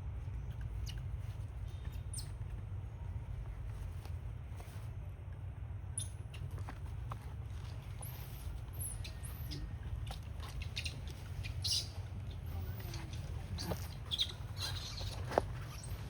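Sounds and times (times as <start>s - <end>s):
steady low rumble: 0.0s - 16.0s
animal squeaks and chirps: 1.7s - 2.4s, 8.0s - 16.0s.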